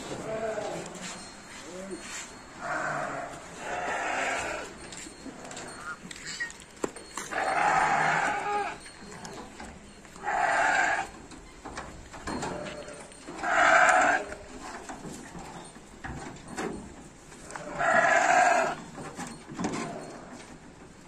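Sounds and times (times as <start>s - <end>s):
sheep bleating: 0.1s - 1.0s, 2.6s - 6.4s, 7.3s - 8.8s, 10.2s - 11.1s, 12.6s - 14.4s, 17.5s - 18.8s.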